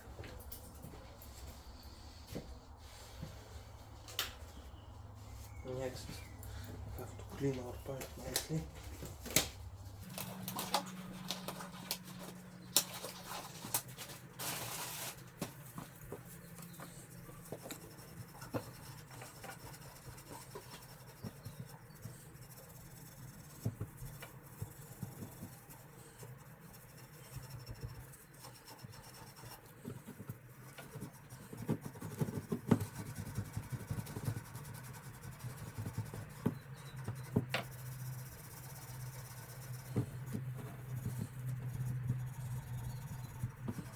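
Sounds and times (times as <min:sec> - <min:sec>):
pipe being scrubbed: 0:09.9 - 0:43.9.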